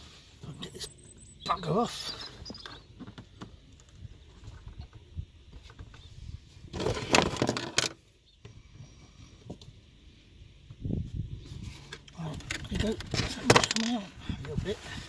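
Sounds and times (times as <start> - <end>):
small clicks and scrapes: 11.6 - 14.0.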